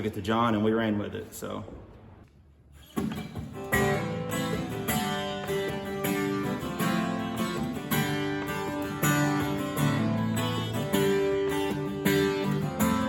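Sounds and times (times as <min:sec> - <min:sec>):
acoustic guitar strumming chords: 0:02.8 - 0:13.0.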